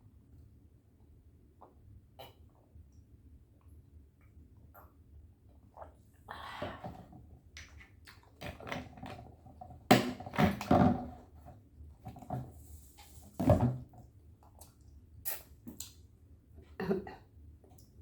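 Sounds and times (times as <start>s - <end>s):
chewing and mouth smacks: 7.6s - 8.8s.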